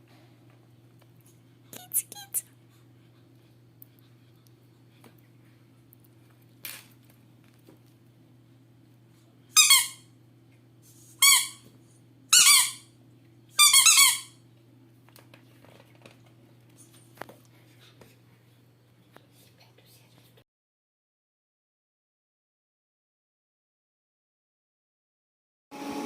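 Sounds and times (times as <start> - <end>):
squeaky dog toy squeaking: 9.6 - 10.0, 11.2 - 11.6, 12.3 - 12.9, 13.6 - 14.4.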